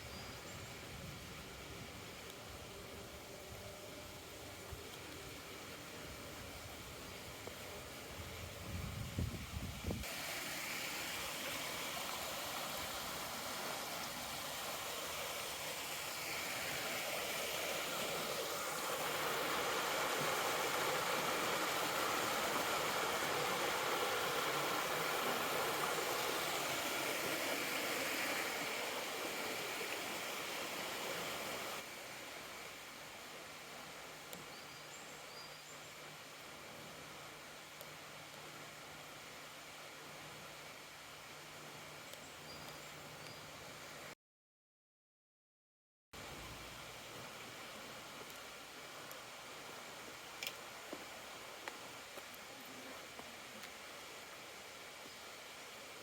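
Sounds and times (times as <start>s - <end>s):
river rushing over rocks: 10.0s - 34.2s.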